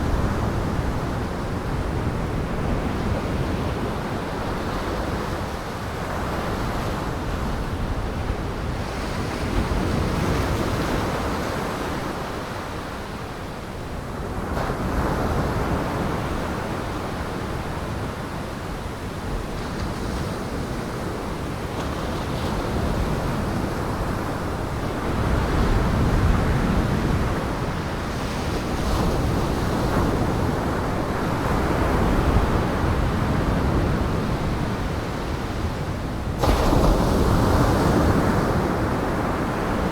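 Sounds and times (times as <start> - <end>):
wind: 0.0 - 39.9.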